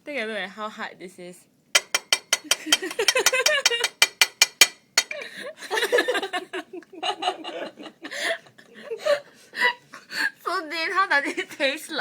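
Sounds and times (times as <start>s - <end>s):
utensil tapping hard meat: 1.8s - 5.2s
people giggling: 5.1s - 9.4s.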